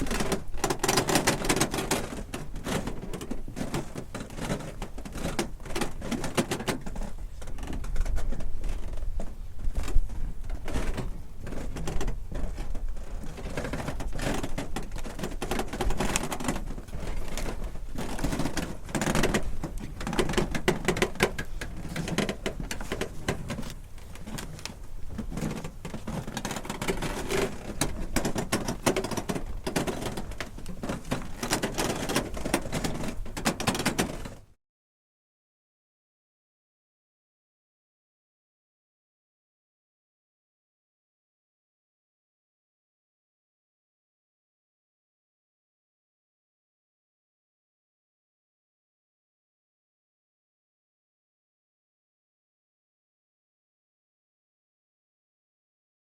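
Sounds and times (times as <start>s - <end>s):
wooden dock timbers creaking: 0.0s - 34.6s.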